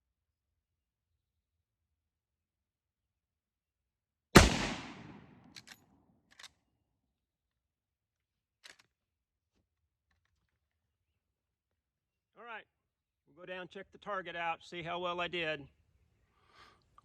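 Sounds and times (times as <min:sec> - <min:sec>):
rifle shot: 0:04.4 - 0:05.6.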